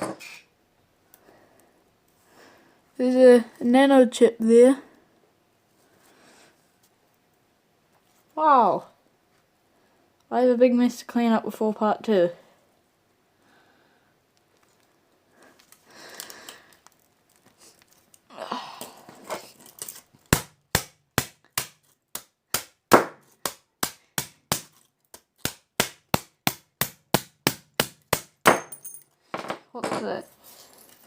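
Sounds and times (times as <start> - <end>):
rustling and scraping: 19.0 - 20.3, 29.4 - 31.0
sharp knocks on phone parts: 25.4 - 29.6.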